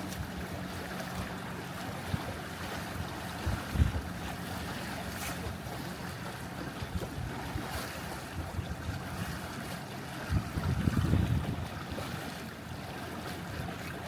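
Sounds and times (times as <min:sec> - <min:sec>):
water washing along hull: 0:00.0 - 0:14.0
wind buffeting microphone: 0:03.0 - 0:04.4, 0:06.7 - 0:12.5.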